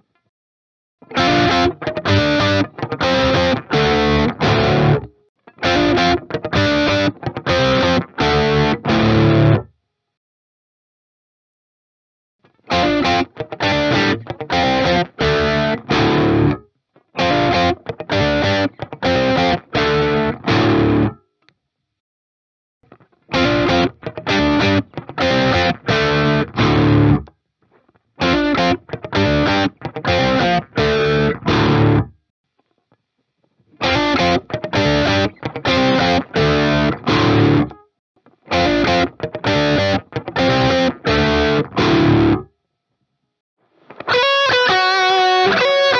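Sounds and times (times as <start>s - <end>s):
distorted electric guitar chords: 1.0s - 9.7s, 12.7s - 16.6s, 17.2s - 21.2s, 23.3s - 27.3s, 28.2s - 32.2s, 33.8s - 37.8s, 38.5s - 42.5s, 44.0s - 45.9s.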